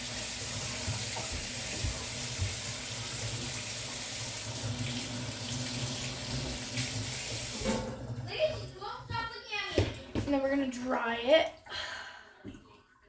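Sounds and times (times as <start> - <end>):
tap running into a sink: 0.0 - 9.2.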